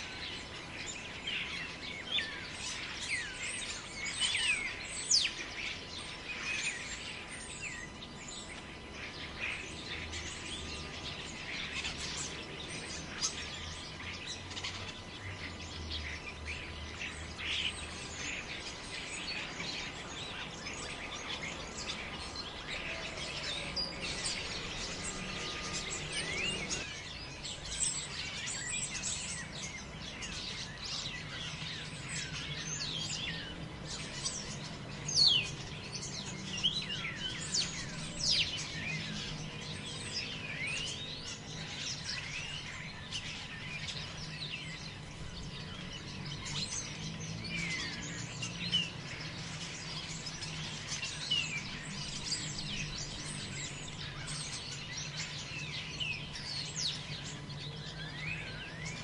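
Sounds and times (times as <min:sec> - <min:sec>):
many birds chirping: 0:00.0 - 0:59.0
low background rush: 0:08.4 - 0:28.3.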